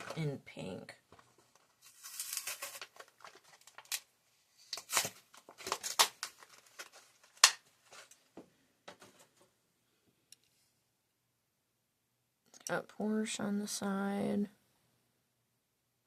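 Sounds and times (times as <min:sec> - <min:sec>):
plastic and cardboard crinkling: 0:00.0 - 0:00.3, 0:01.1 - 0:09.5.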